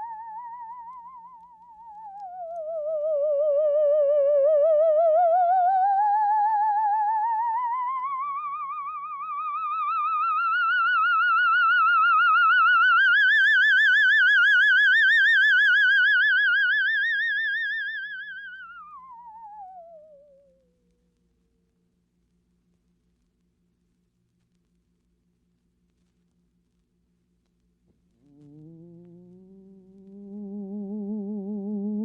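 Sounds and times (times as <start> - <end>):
wailing ghost tone with vibrato: 0.0 - 20.7, 28.2 - 32.0.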